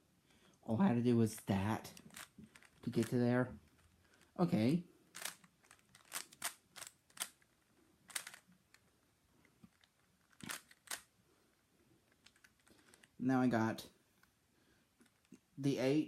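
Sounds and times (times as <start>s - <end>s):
puzzle cube plastic clicks: 1.9s - 4.4s, 5.1s - 11.1s, 12.0s - 13.2s, 15.0s - 15.4s.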